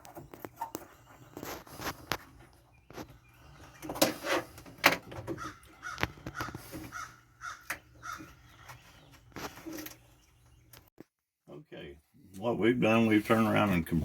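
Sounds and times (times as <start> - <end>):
short repeated cawing calls: 5.4 - 8.3.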